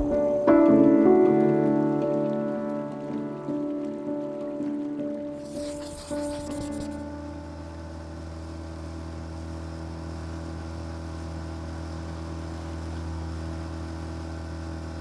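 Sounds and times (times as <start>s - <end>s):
engine humming steadily: 7.0s - 15.0s.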